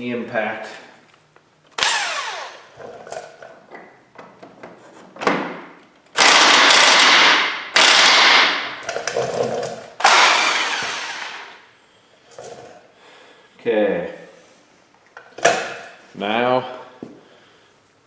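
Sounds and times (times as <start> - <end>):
impact wrench hammering: 6.2 - 8.8, 10.0 - 11.6.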